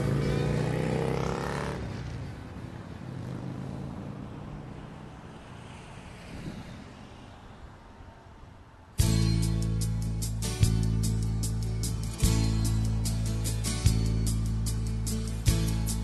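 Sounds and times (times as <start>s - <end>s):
faint traffic and road noise: 0.0s - 16.0s
song playing: 9.0s - 16.0s.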